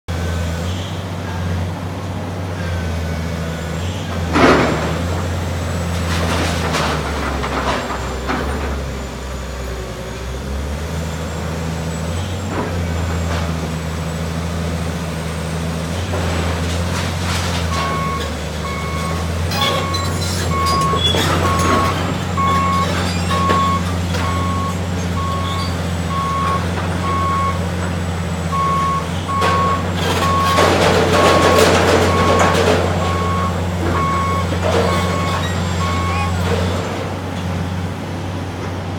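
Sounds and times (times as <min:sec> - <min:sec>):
diesel machinery running: 0:00.1 - 0:38.9
debris crashing: 0:04.2 - 0:08.8, 0:15.7 - 0:37.4
reversing alarm beeping: 0:17.7 - 0:27.6, 0:28.5 - 0:36.4.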